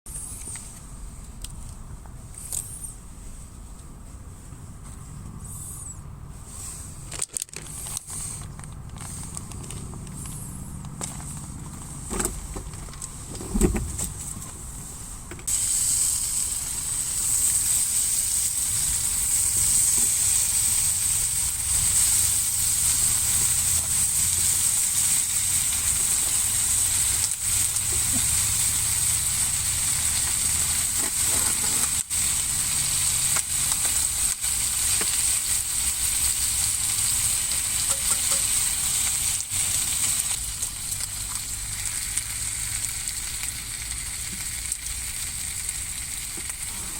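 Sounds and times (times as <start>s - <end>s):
food sizzling in a hot pan: 15.5s - 46.9s.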